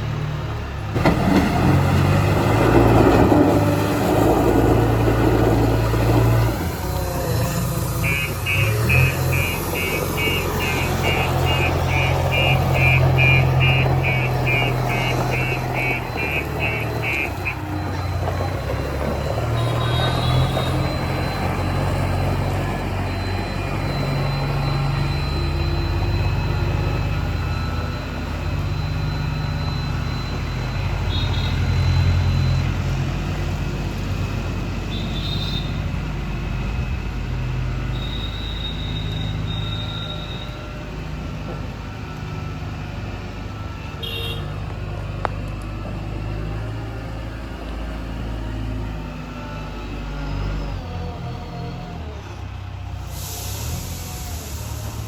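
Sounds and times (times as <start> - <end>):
diesel engine rumbling: 0.0 - 55.0
high repeating beep: 7.9 - 32.8.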